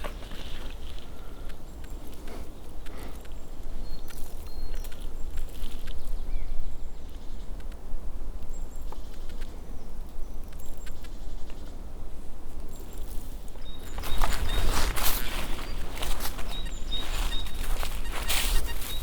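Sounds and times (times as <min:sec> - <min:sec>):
rustling on forest floor: 0:00.0 - 0:03.4, 0:12.6 - 0:19.0
small birds chirping: 0:00.0 - 0:19.0.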